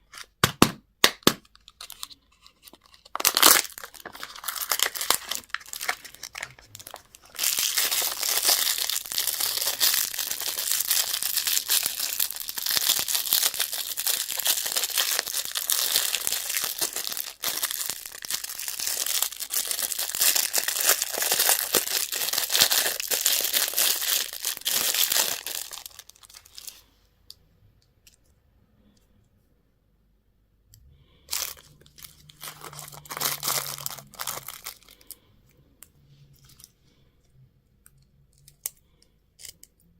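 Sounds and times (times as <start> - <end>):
candy wrapper crinkling: 1.2 - 26.8, 31.2 - 35.2.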